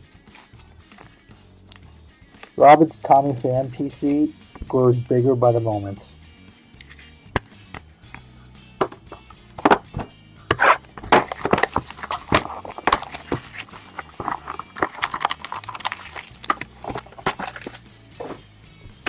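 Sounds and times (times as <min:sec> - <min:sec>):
low background music: 0:00.0 - 0:19.0
trading cards clicking and rustling: 0:09.1 - 0:19.0.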